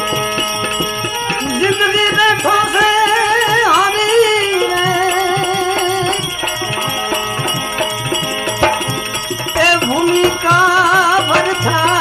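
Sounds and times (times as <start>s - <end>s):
hand drum beats: 0.0s - 12.0s.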